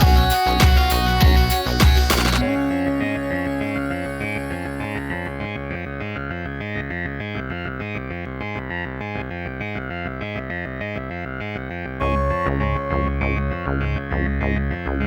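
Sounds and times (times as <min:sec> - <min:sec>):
electronic synthesizer music: 0:00.0 - 0:07.2, 0:12.0 - 0:15.0.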